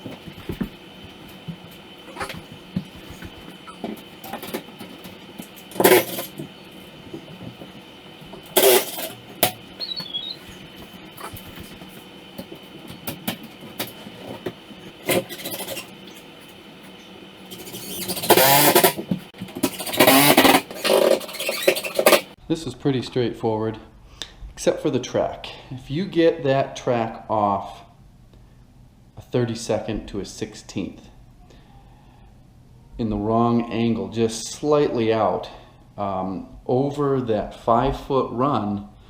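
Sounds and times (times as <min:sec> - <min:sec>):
power drill running: 0:00.0 - 0:12.0, 0:17.4 - 0:22.3
handling knocks and clicks: 0:00.0 - 0:22.3.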